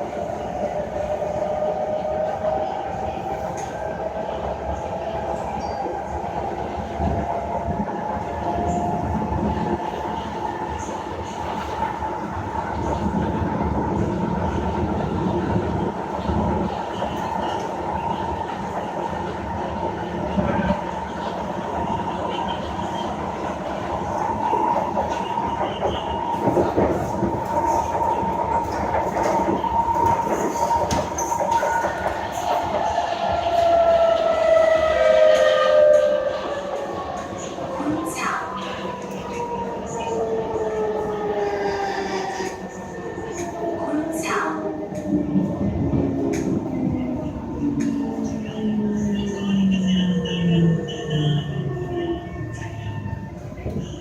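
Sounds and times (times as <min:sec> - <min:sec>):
train whine: 0:00.0 - 0:54.0
wheels rumbling on rail: 0:00.0 - 0:54.0
train wheels clattering on rails: 0:12.8 - 0:39.6.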